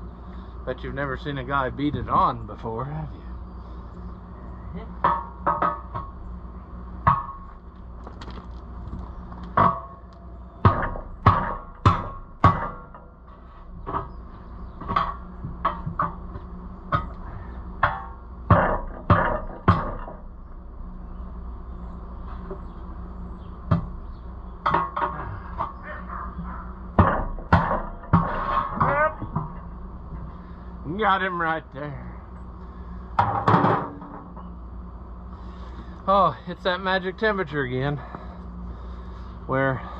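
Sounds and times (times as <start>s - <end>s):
hammer striking tire rim: 10.6s - 13.0s, 17.8s - 20.1s, 27.0s - 28.9s.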